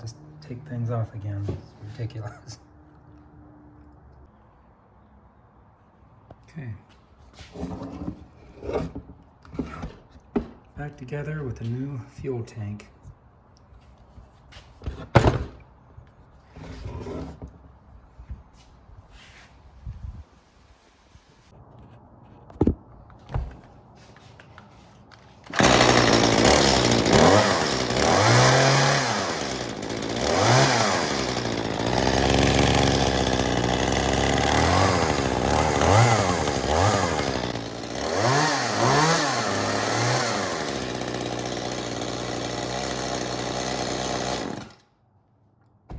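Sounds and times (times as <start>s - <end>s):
chainsaw revving: 25.5s - 44.8s.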